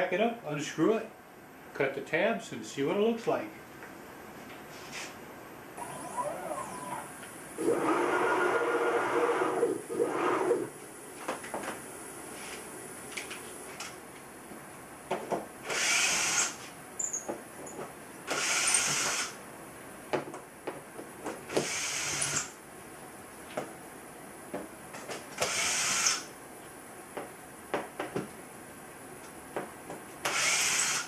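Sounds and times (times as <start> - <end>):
cordless drill bursts: 5.8 - 10.7, 15.6 - 16.6, 18.3 - 19.4, 21.5 - 22.6, 25.4 - 26.3, 30.2 - 31.0.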